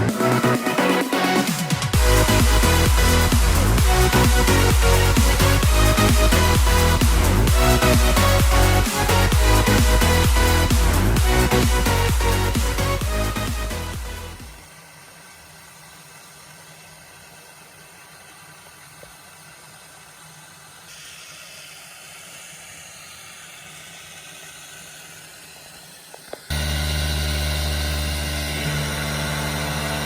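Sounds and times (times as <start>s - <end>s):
loud machine hum: 0.0s - 14.8s, 26.5s - 30.0s
faint steady hiss: 14.4s - 26.5s.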